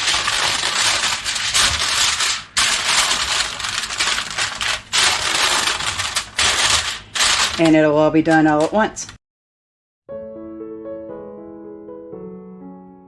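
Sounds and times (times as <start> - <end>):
aluminium foil crinkling: 0.0 - 9.2.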